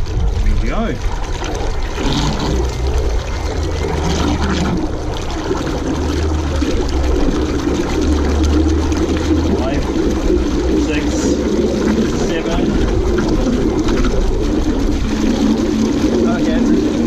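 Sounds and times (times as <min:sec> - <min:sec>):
low motor hum: 0:00.0 - 0:17.0
water churning and splashing: 0:00.0 - 0:17.0.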